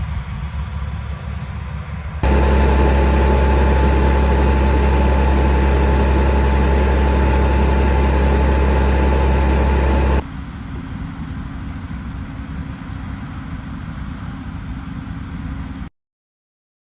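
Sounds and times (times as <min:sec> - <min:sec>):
heavy machine engine running: 0:02.2 - 0:10.2.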